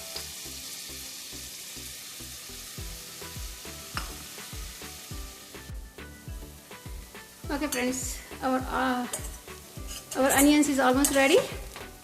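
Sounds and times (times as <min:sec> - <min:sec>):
onions sizzling in oil: 0:00.0 - 0:12.0
stirring scrapes in pan: 0:09.2 - 0:10.6.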